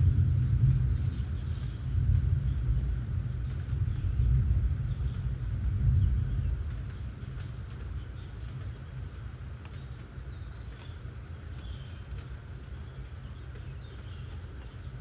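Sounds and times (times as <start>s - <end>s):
low rumble: 0.0s - 8.7s
faint drip-like ticks: 0.0s - 15.0s
steady rain: 0.0s - 15.0s.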